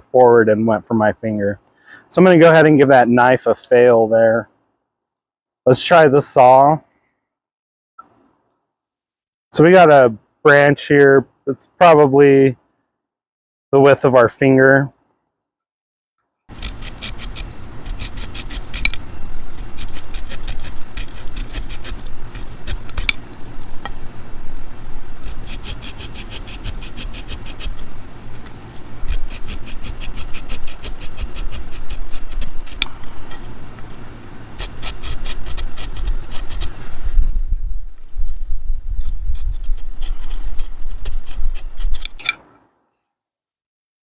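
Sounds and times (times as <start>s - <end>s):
saw rasping through branch: 16.5s - 37.2s, 38.2s - 42.4s
low rumble: 16.6s - 42.0s.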